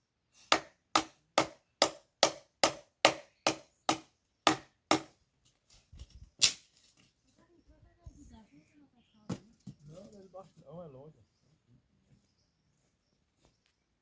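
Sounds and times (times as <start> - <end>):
axe strikes into wood: 0.5 - 5.1.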